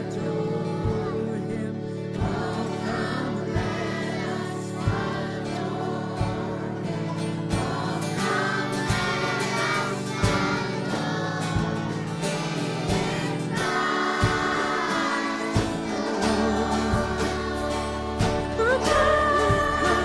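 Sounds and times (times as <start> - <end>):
accompanying music: 0.0 - 20.0
children's choir singing: 0.0 - 20.0
sustained bass notes: 0.0 - 20.0
drum beat: 4.8 - 5.5, 7.5 - 20.0.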